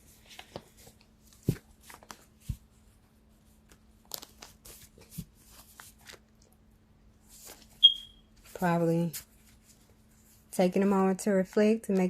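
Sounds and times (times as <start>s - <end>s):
cards shuffling: 3.6s - 6.3s.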